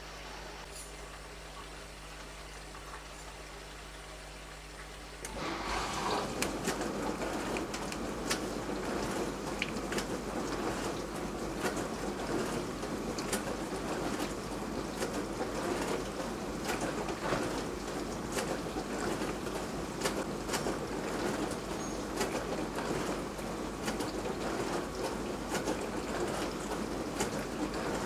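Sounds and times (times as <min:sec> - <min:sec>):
dishwasher water splashing: 0:04.8 - 0:28.0.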